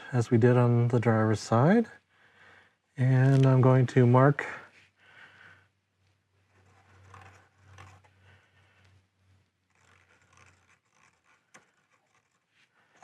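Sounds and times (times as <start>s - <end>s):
marker scratching on plastic: 6.5s - 8.4s, 9.4s - 13.0s.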